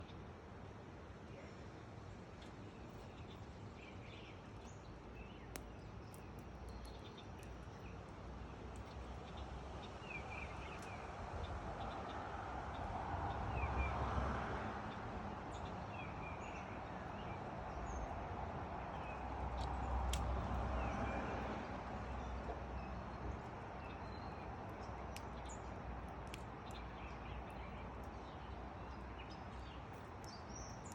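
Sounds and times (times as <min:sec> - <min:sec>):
small birds chirping: 0:02.4 - 0:13.7, 0:14.9 - 0:30.9.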